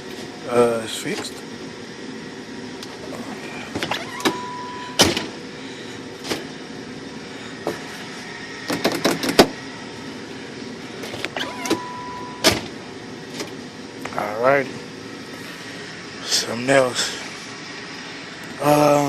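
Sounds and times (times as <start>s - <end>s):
car door lock clicks and clunks: 3.8s - 5.3s, 11.1s - 12.7s
short steady beep: 4.3s - 5.0s, 11.4s - 12.5s.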